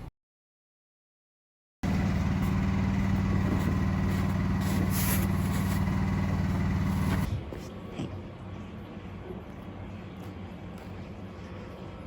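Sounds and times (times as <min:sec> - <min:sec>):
engine idling: 0:01.8 - 0:07.3.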